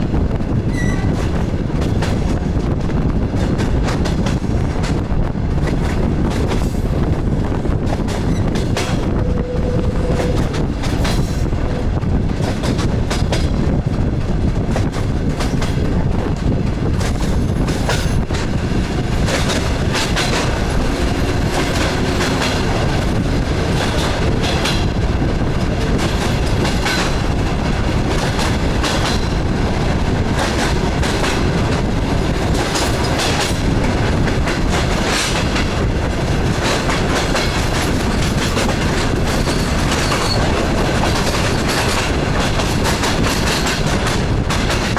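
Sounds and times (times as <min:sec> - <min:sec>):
train rumbling: 0:00.0 - 0:44.9
wheels clattering over rail joints: 0:30.3 - 0:44.9.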